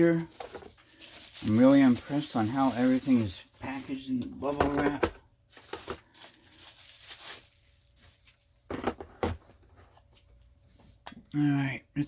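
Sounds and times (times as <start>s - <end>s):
plastic packaging rustling: 0.0s - 10.3s
parts knocking when set down: 4.4s - 5.2s, 8.7s - 9.9s.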